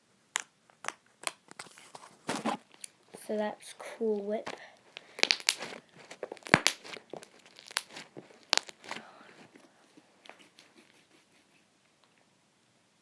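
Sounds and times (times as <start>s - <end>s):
slime crackling pops: 4.1s - 9.2s.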